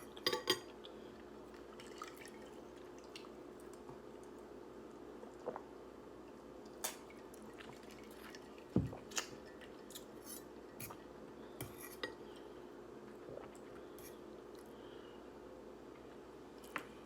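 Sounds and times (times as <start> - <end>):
faint steady hum: 0.0 - 17.0
wet eating sounds: 6.7 - 11.1.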